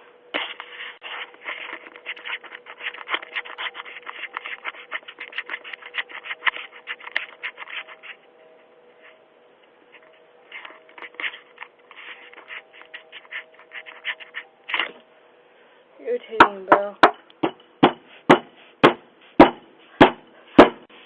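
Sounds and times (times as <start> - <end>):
scratching against a microphone: 0.4 - 8.2, 9.9 - 14.5.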